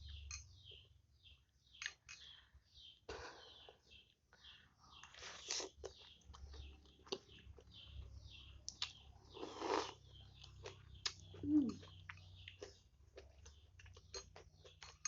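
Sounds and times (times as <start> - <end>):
chewing and slurping: 5.0 - 7.7, 8.7 - 15.0.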